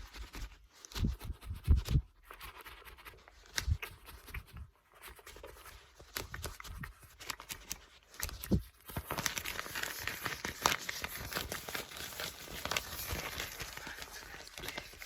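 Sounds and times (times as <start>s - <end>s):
book pages turning: 1.9s - 15.0s.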